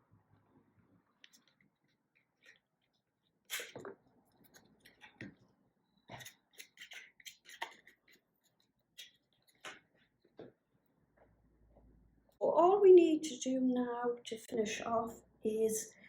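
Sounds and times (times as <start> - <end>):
cardstock rustling and tapping: 6.1 - 8.2.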